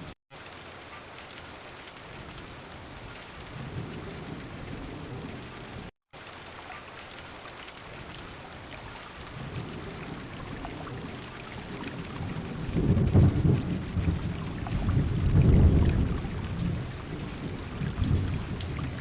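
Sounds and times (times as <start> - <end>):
heavy rain on car window: 0.3 - 6.4, 7.8 - 19.0
thunder rolling: 9.4 - 19.0.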